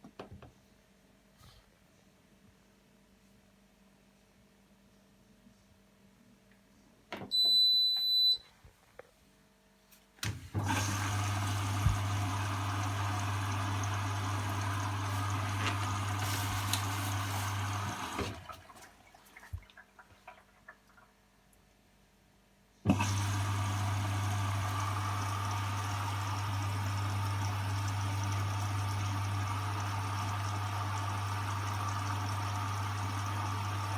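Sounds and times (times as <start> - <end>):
washing machine beeping: 7.3 - 8.5, 22.9 - 33.9.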